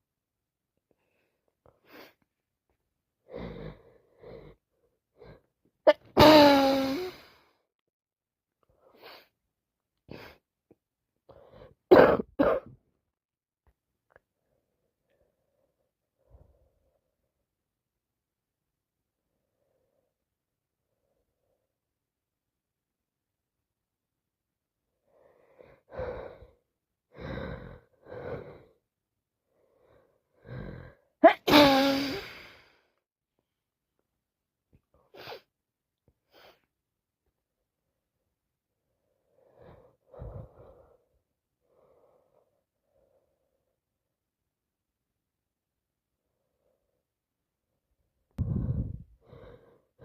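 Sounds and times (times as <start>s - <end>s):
person coughing: 5.9s - 7.1s, 11.9s - 12.8s, 31.2s - 32.2s
woman sneezing: 5.9s - 7.1s, 31.2s - 32.2s.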